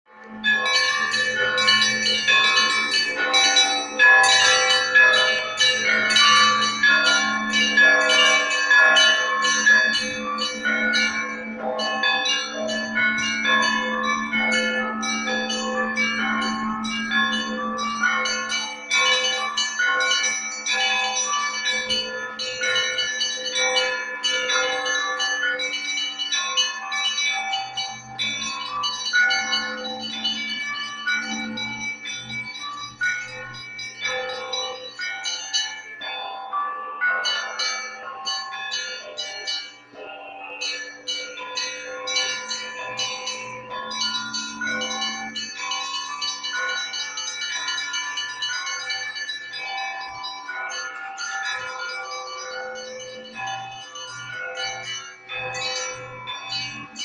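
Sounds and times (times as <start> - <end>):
church bells pealing: 0.1 - 57.0
deep hum of large bell: 0.1 - 57.0.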